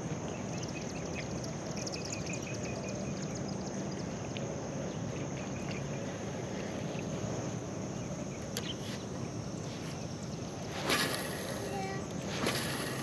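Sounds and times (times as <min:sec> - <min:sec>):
low steady rumble: 0:00.0 - 0:13.0
high insect buzz: 0:07.3 - 0:13.0.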